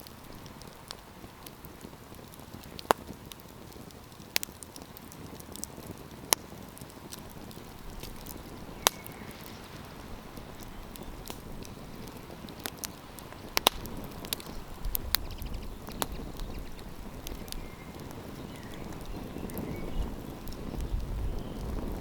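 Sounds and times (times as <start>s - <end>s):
campfire crackling and popping: 0.0s - 22.0s.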